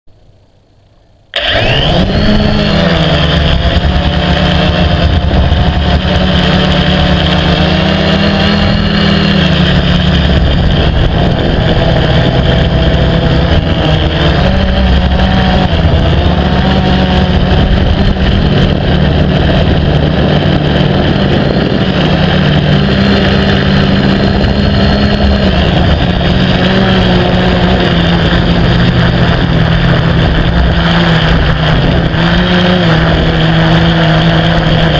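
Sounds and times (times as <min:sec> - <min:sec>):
drone motors buzzing: 0:01.1 - 0:34.9.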